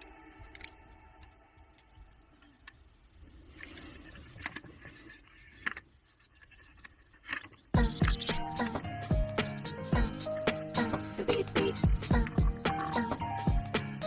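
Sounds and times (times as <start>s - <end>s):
soft scrape: 3.2s - 7.2s.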